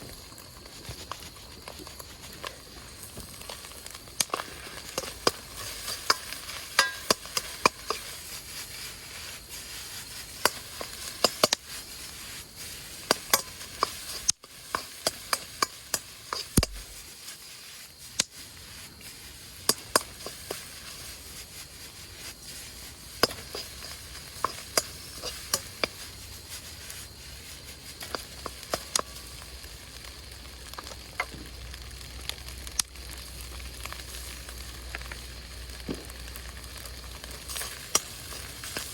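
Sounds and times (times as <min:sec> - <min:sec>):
rice sizzling in a wok: 0:00.0 - 0:38.9
metal spatula scraping a wok: 0:00.8 - 0:29.5, 0:37.3 - 0:38.9.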